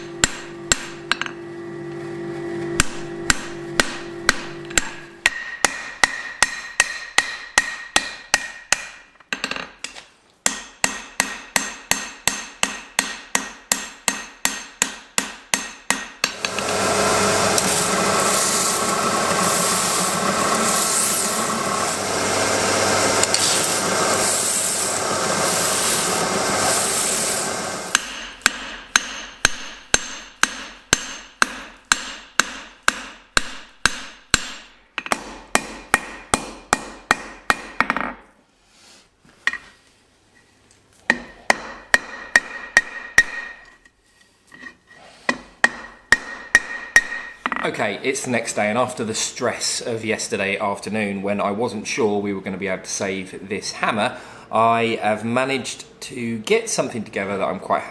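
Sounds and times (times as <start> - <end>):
hammer striking steel on anvil: 0.0 - 1.4, 2.8 - 9.1, 10.4 - 16.8, 27.0 - 38.1, 41.1 - 43.7, 45.3 - 47.6.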